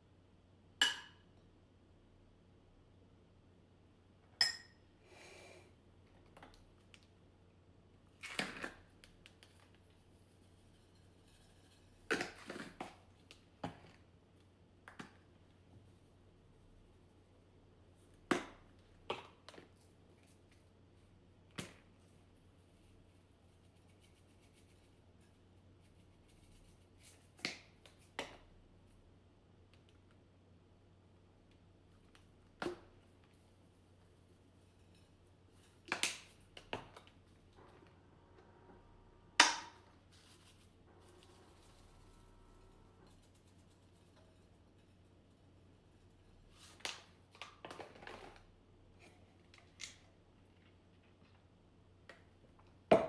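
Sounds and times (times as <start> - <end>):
kitchenware ringing clink: 4.4 - 4.8.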